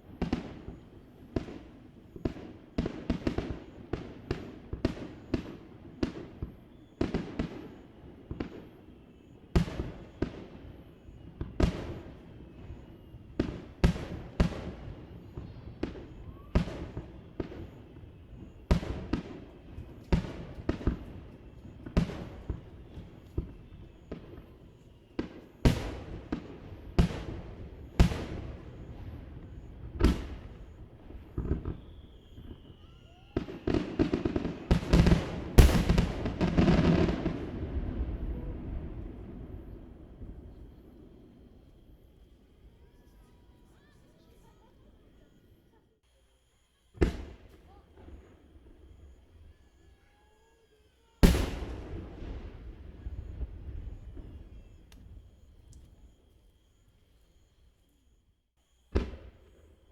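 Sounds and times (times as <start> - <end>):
fireworks bursting with echoes: 0.0 - 45.8, 47.0 - 56.8, 58.9 - 59.9
faint falling whistle: 15.4 - 18.8, 31.3 - 37.5, 46.4 - 52.0, 52.9 - 59.0.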